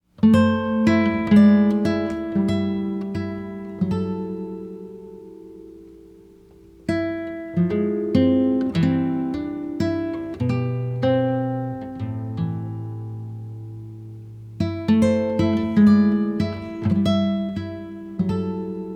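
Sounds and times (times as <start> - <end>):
acoustic guitar picking: 0.1 - 18.9.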